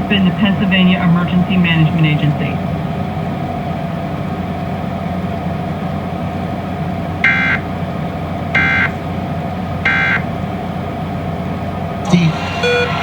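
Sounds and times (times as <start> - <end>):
steady low hum: 0.0 - 13.0
short electronic data bursts: 7.2 - 7.6, 8.6 - 8.9, 9.9 - 10.2, 12.1 - 13.0.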